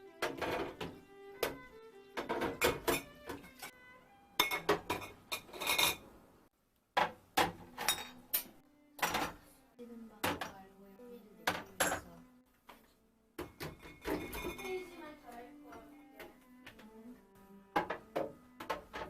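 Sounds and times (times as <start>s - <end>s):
dishes and cutlery clinking: 0.2s - 1.6s, 2.2s - 3.8s, 4.4s - 6.1s, 7.0s - 9.5s, 11.4s - 12.2s, 13.4s - 15.0s, 17.7s - 19.0s.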